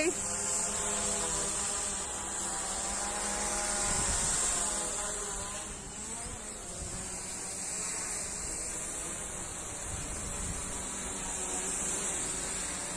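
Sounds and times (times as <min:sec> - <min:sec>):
drone propellers buzzing: 0:00.0 - 0:12.9.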